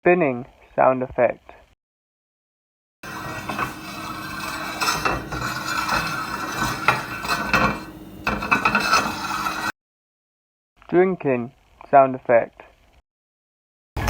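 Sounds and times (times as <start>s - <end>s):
object spinning with rattling clatter: 3.0s - 9.7s.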